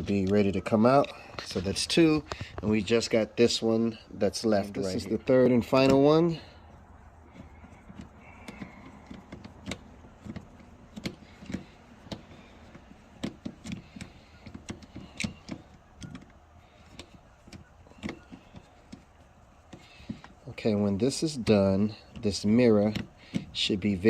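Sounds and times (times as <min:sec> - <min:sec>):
metallic clicks and knocks: 0:07.3 - 0:24.0.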